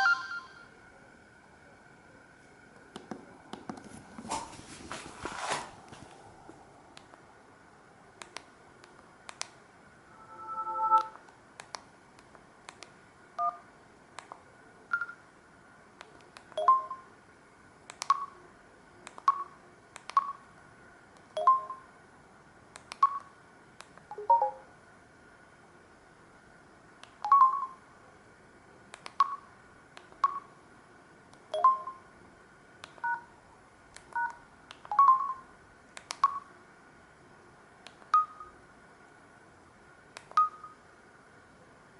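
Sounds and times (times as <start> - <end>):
short keypad beeps: 10.2 - 11.2, 31.6 - 32.0, 34.2 - 35.4.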